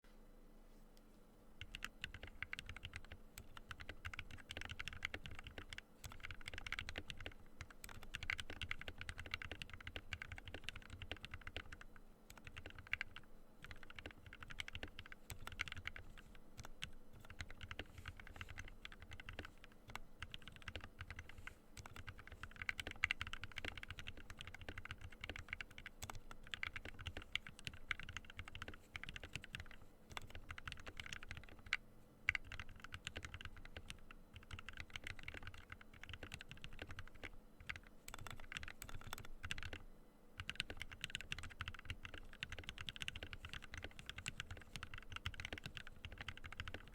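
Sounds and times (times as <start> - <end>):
mechanical keyboard typing: 1.6 - 46.9.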